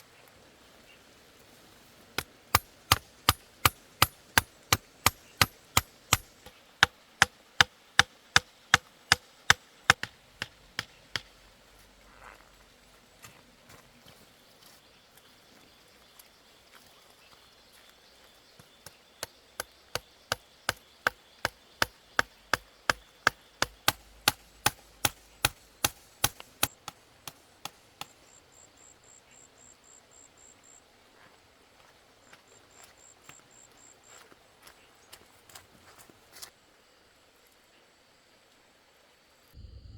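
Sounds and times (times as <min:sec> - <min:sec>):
insect chirping: 0:00.0 - 0:35.6
chopping wood: 0:02.2 - 0:11.4, 0:18.8 - 0:28.2.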